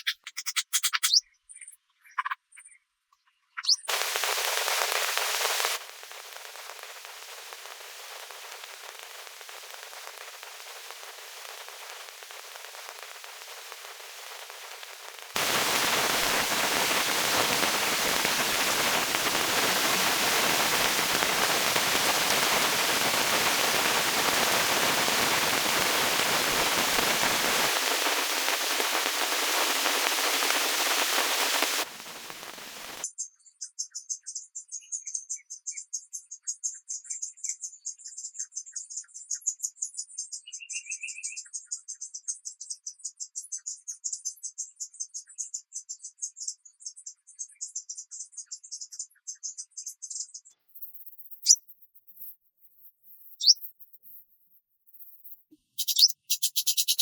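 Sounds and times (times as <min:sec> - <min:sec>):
rain hiss: 0:03.9 - 0:33.0, 0:55.8 - 0:57.0.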